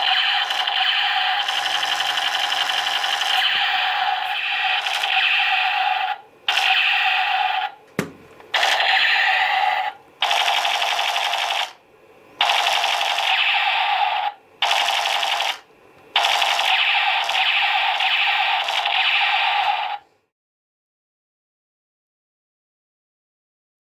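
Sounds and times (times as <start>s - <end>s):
toy gun machine-gun sound effect: 0.0s - 7.8s, 8.6s - 11.8s, 12.4s - 20.0s.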